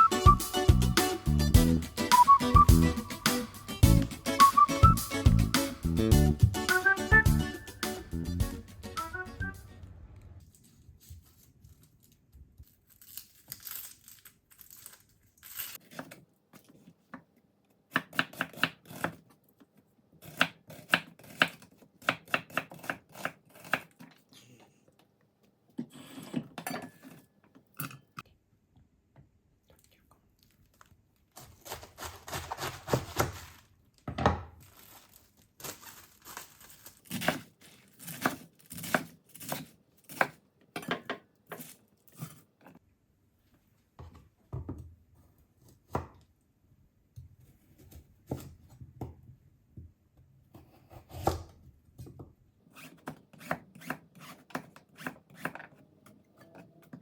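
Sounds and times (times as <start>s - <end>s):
rustling scraping or tearing: 10.4s - 15.9s, 31.3s - 33.8s, 34.6s - 38.8s.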